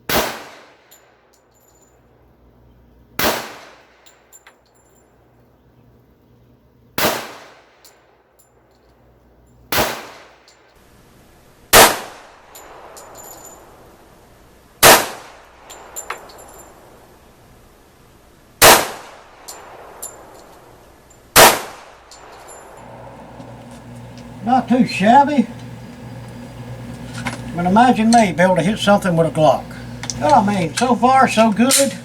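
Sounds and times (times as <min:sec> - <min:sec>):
pistol shots: 0:00.1 - 0:00.9, 0:03.2 - 0:04.0, 0:07.0 - 0:07.7, 0:09.7 - 0:10.4, 0:11.7 - 0:13.1, 0:14.8 - 0:15.5, 0:18.6 - 0:20.2, 0:21.4 - 0:22.0.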